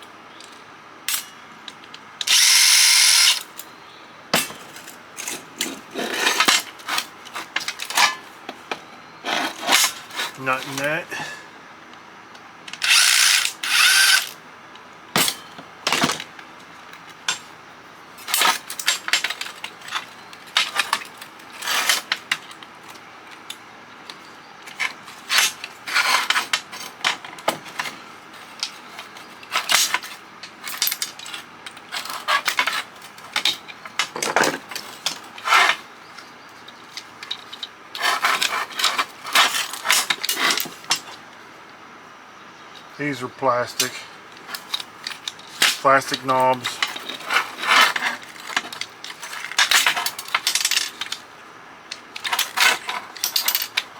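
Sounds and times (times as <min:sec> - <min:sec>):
hand tools clicking on metal: 0:00.4 - 0:03.7, 0:12.7 - 0:14.4.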